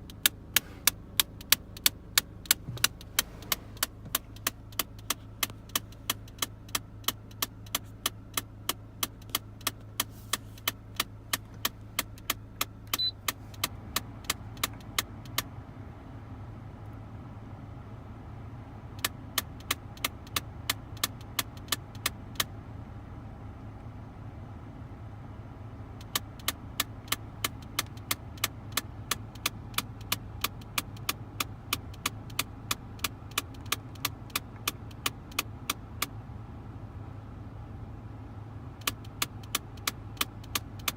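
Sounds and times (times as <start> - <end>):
rapid clicking of flap actuator: 0.0 - 15.5, 26.0 - 36.2, 38.8 - 40.9.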